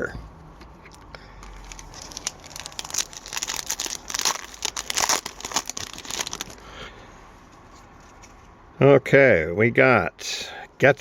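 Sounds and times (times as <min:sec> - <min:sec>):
cards rustling: 0:00.9 - 0:06.6
wrapper crinkling and tearing: 0:00.9 - 0:06.6.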